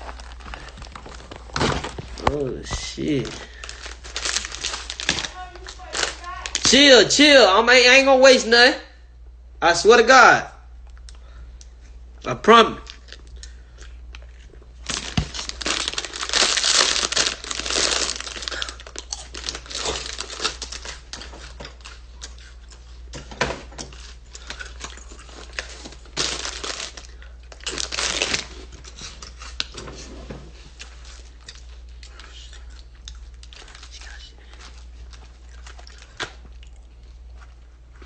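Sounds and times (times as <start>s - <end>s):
plastic packaging crinkling and tearing: 0.0s - 6.9s, 14.2s - 22.2s, 24.0s - 29.8s.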